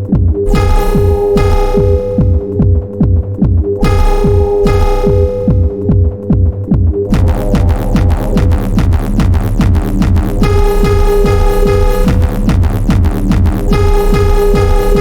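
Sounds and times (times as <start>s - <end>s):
kick drum thumping: 0.1s - 15.0s
held synth tone: 0.5s - 2.6s, 3.8s - 6.0s, 10.4s - 12.6s, 13.6s - 15.0s.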